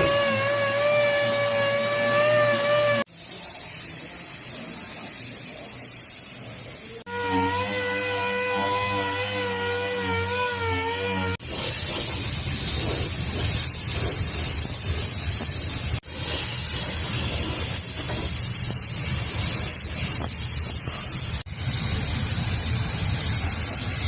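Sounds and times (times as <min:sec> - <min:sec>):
power tool whining: 0:00.0 - 0:03.1, 0:07.1 - 0:16.1
plain hiss: 0:11.4 - 0:24.0.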